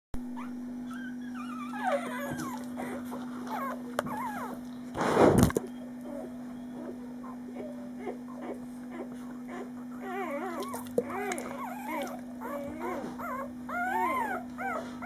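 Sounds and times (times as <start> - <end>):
puppy whimpering and squeaking: 0.3 - 4.8, 5.6 - 15.0
loud rustling thump: 5.0 - 5.6.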